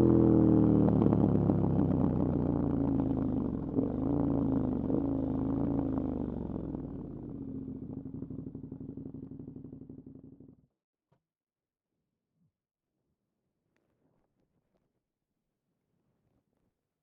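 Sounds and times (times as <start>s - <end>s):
motorcycle engine running: 0.0s - 10.6s.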